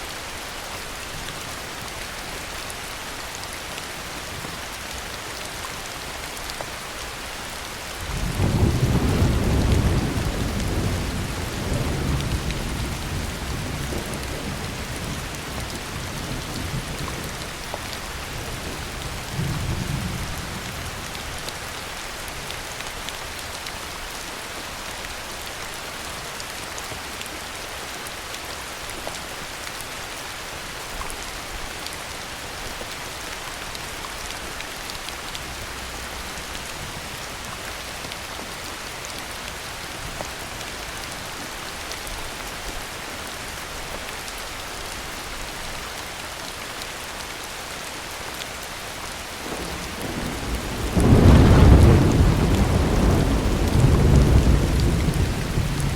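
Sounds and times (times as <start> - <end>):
heavy rain falling: 0.0 - 55.9
low rumble of thunder: 8.0 - 17.5, 49.5 - 55.9.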